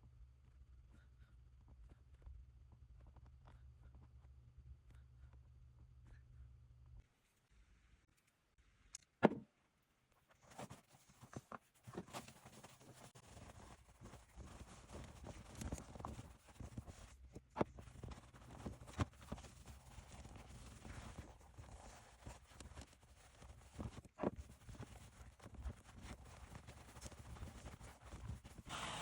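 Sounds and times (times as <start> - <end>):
faint handling noise: 8.1 - 28.7.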